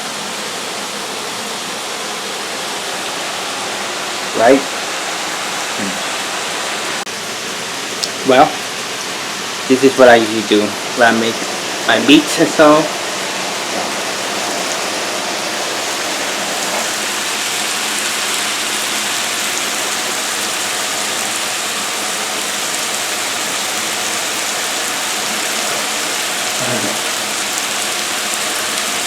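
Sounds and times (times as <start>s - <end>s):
meat sizzling in a frying pan: 10.9s - 29.0s.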